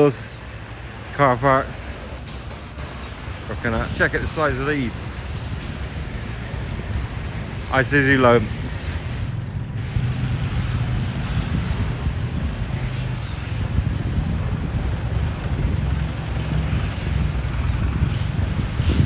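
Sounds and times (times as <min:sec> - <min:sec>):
wind buffeting microphone: 0:02.8 - 0:19.0.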